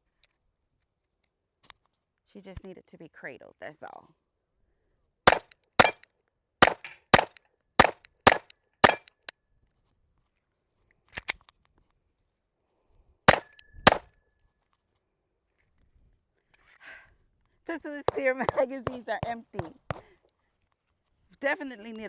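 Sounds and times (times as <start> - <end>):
metallic ringing of steel targets: 5.3 - 6.0, 6.6 - 9.3, 13.3 - 14.0
pistol shots: 5.3 - 6.0, 6.6 - 9.3, 13.3 - 14.0.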